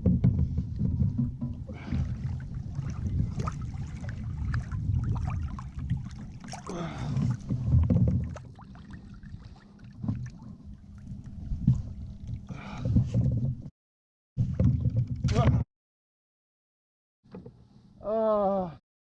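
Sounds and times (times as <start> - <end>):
uneven low rumble: 0.0 - 13.7
water lapping against hull: 0.0 - 13.7.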